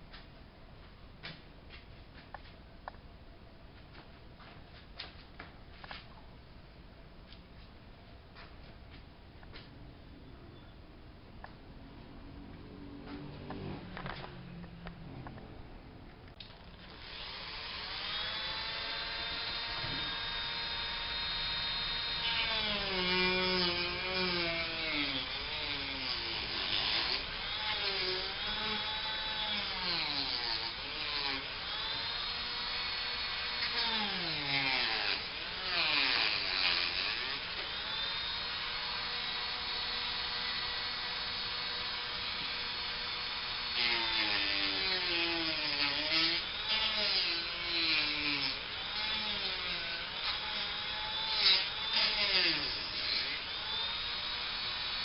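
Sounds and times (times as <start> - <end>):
electric power tool motor: 16.6 - 55.0.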